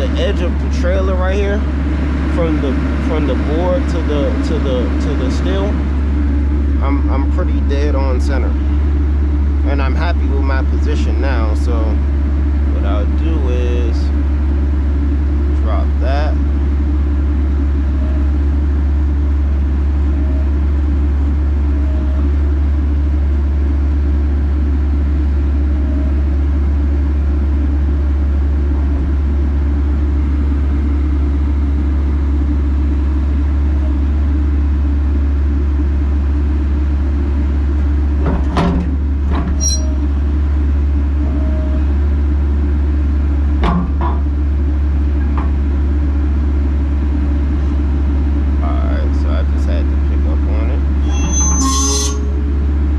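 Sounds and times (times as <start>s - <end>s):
excavator diesel engine droning: 0.0s - 52.9s
short clunks: 38.2s - 40.3s, 43.6s - 44.4s.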